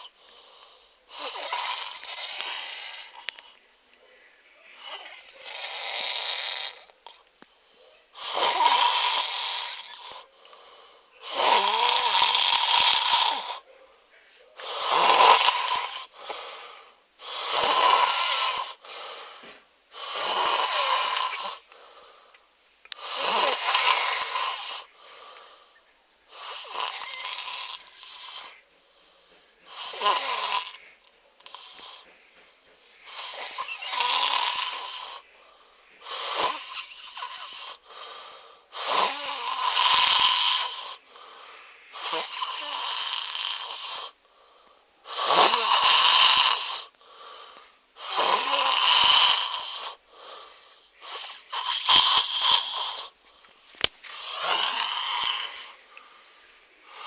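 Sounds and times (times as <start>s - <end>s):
person snoring loudly: 1.1s - 3.4s, 4.8s - 6.9s, 8.2s - 10.2s, 11.2s - 13.6s, 14.6s - 16.2s, 17.2s - 18.9s, 20.0s - 21.6s, 23.0s - 24.9s, 26.3s - 28.6s, 29.7s - 30.8s, 33.1s - 35.2s, 36.0s - 44.2s, 45.1s - 47.4s, 48.0s - 53.1s, 54.1s - 55.8s
quiet breath out: 3.0s - 5.4s, 7.1s - 8.2s, 18.7s - 19.7s, 21.3s - 23.0s, 24.8s - 26.0s, 28.4s - 29.7s, 30.7s - 33.8s, 40.6s - 42.8s, 49.8s - 51.5s, 52.8s - 57.0s.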